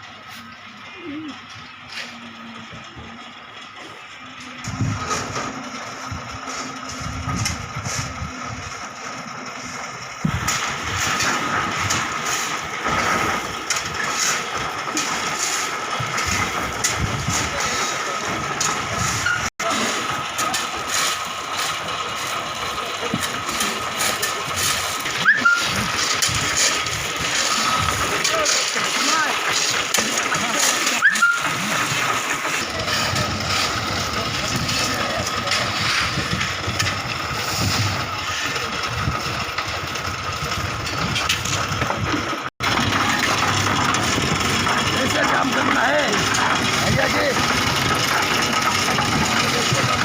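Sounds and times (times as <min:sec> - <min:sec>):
construction site rumble: 0:00.0 - 0:50.0
machinery noise with high whine: 0:00.0 - 0:50.0
short rising squeak: 0:25.2 - 0:25.9, 0:31.0 - 0:31.6.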